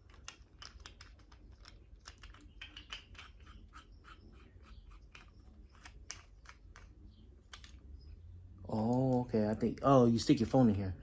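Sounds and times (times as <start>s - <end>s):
hands handling plastic parts: 0.0s - 7.8s.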